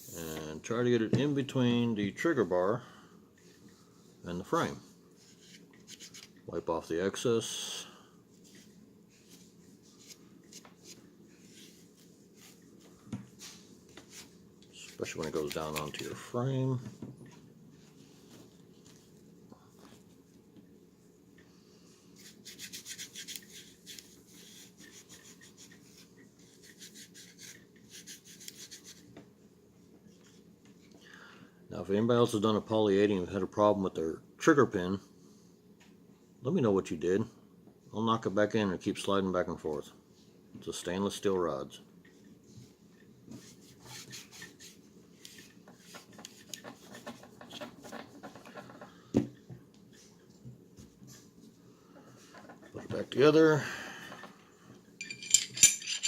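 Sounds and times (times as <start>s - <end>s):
rubbing strokes on pistol parts: 8.4s - 16.1s, 22.1s - 29.1s, 43.3s - 47.8s.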